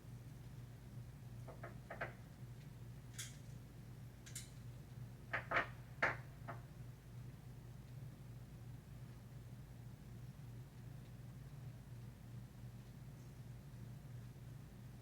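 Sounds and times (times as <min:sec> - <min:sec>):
low electrical hum: 0:00.0 - 0:15.0
light clicks and knocks: 0:01.4 - 0:03.6.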